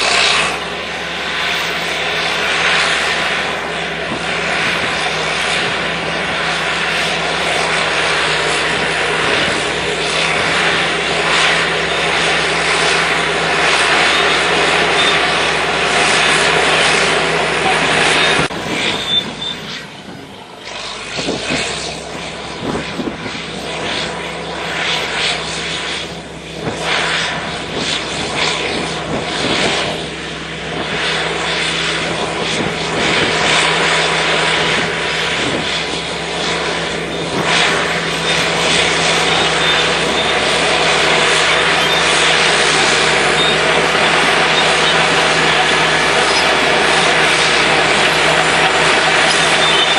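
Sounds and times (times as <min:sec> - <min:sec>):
bulldozer diesel engine: 0:00.0 - 0:49.9.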